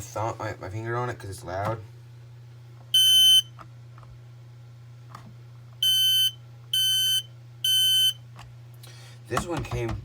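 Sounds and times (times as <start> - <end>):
smoke alarm beeping: 3.0 - 3.5, 5.8 - 8.2.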